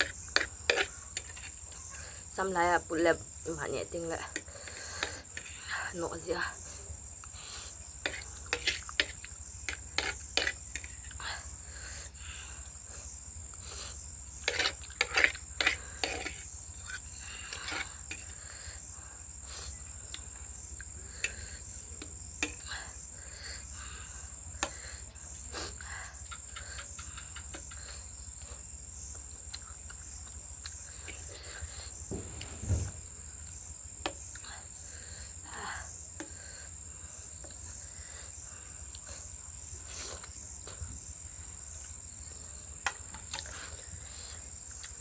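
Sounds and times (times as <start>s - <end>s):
crickets chirring: 0.0s - 45.0s
loud knock: 32.1s - 33.1s.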